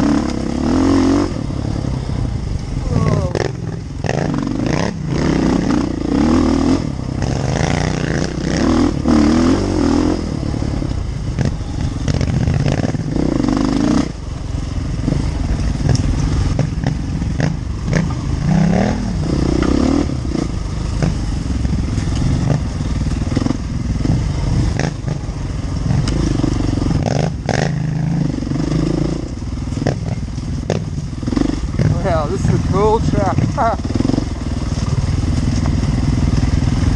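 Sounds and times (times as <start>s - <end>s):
motorcycle engine revving: 0.0s - 36.9s
motorcycle knocks and clatter: 15.0s - 18.2s, 21.0s - 25.2s, 29.3s - 32.6s, 33.3s - 36.9s.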